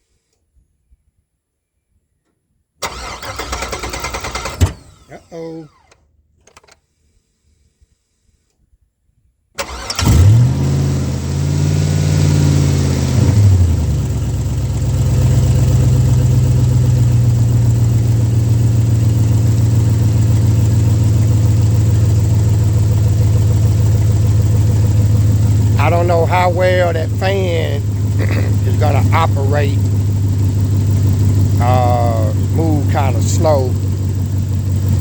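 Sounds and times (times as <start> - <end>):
pickup engine starting and idling: 2.8 - 5.9, 9.6 - 35.0.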